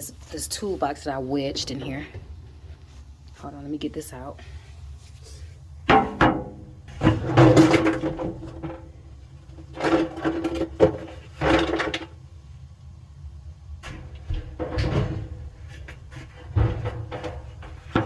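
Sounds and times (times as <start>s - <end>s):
toolbox knocking and scraping: 5.9s - 12.1s, 13.8s - 18.0s.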